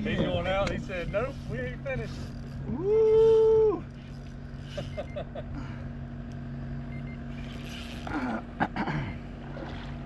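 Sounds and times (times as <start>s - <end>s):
boat motor humming: 0.0s - 10.0s.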